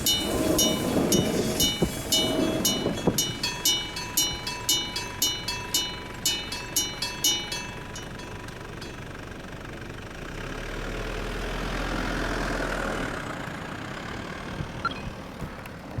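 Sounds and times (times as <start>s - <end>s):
vehicle passing: 0.0s - 4.7s
level crossing bell ringing: 0.0s - 9.3s.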